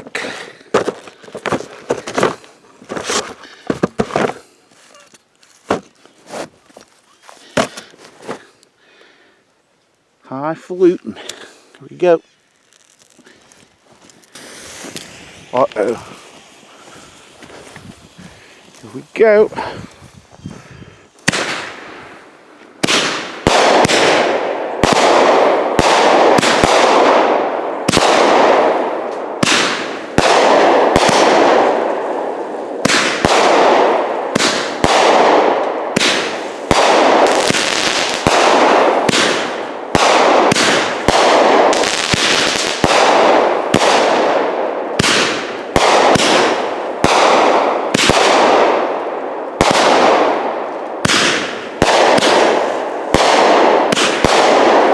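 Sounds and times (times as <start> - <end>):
firework bangs: 14.2 - 18.6, 21.2 - 22.2, 22.8 - 54.9.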